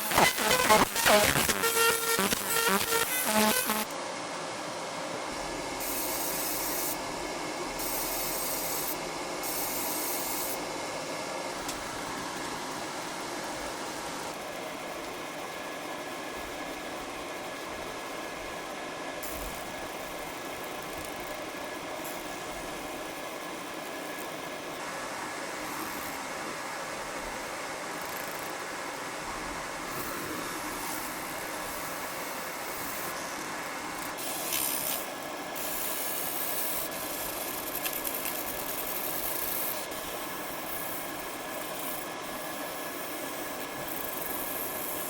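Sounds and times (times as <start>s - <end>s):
loud hiss bursts: 0.0s - 3.9s
laser machine fan rushing: 0.0s - 4.3s
faint high whine: 0.0s - 45.0s.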